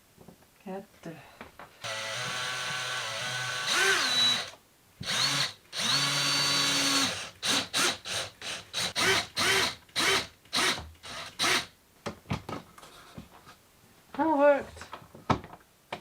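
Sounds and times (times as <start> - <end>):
power drill running: 1.8 - 11.7.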